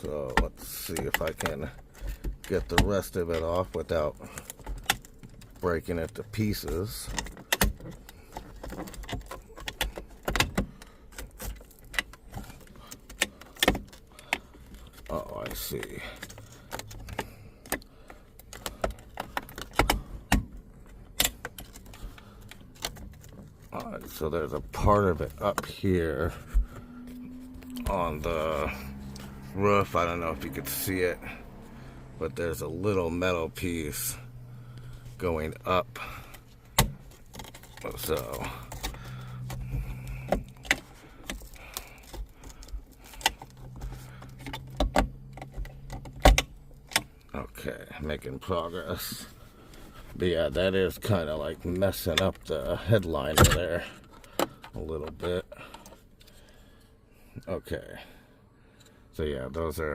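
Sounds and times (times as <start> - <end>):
low steady hum: 0.0 - 59.9
plastic trim clicking and rattling: 0.2 - 25.8, 35.9 - 47.3.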